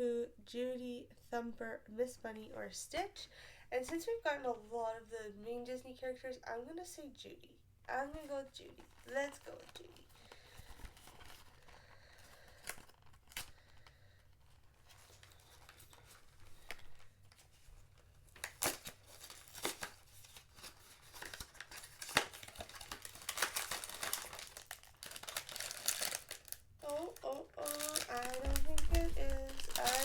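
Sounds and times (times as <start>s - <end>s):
packaging rustling: 8.6s - 30.0s
tearing cardboard: 18.3s - 30.0s.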